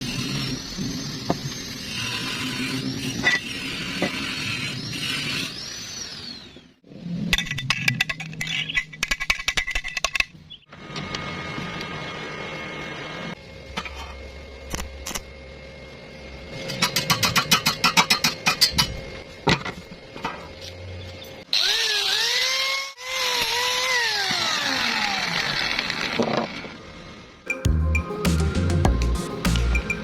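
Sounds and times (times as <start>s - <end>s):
power tool whining: 0.0s - 6.8s, 19.6s - 26.9s.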